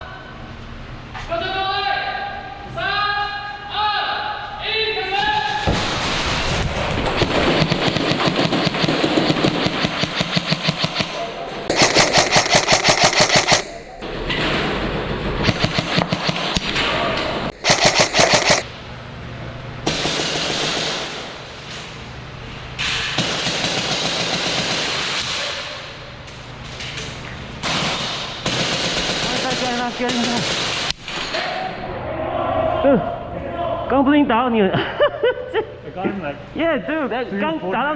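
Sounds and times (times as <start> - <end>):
airsoft guns firing bursts: 11.7 - 14.0, 17.5 - 18.7.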